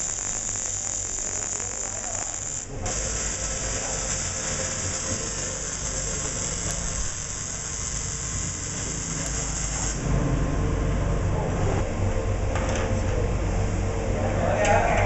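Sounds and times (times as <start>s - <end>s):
welding arc hissing and crackling: 0.0s - 10.1s.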